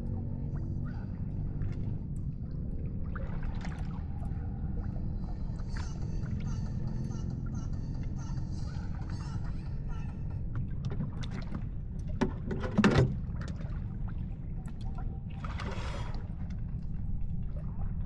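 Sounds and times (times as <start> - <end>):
steady low rumble: 0.0 - 18.0
water gurgling and lapping: 0.0 - 18.0
water splash: 3.0 - 4.4, 14.9 - 16.5.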